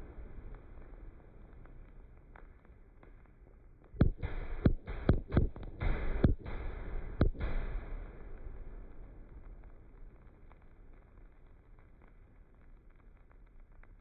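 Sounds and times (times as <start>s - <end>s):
rushing crackle: 7.7s - 14.0s.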